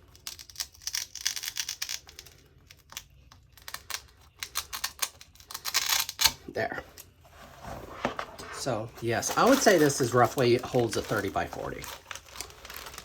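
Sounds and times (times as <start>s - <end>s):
plastic packaging crinkling: 8.6s - 13.0s.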